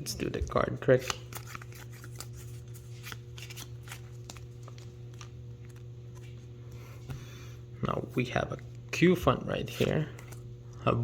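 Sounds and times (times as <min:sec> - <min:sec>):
low electrical hum: 0:00.0 - 0:11.0
trading cards shuffled by hand: 0:00.4 - 0:06.5.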